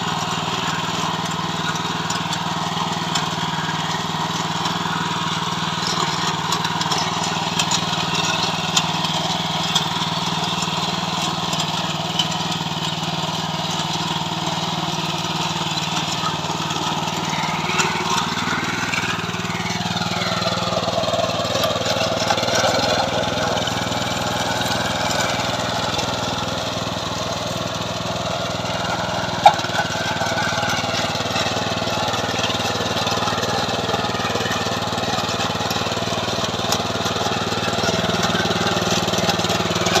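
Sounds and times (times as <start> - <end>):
tiller engine running: 0.0 - 40.0.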